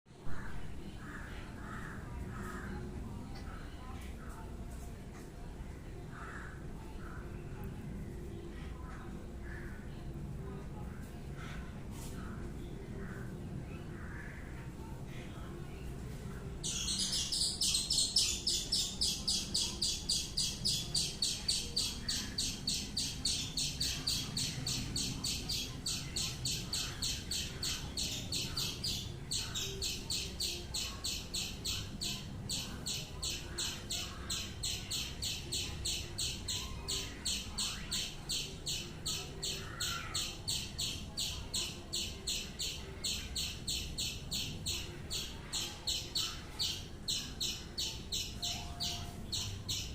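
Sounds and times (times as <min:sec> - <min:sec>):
small bird chirping: 0:16.6 - 0:49.9.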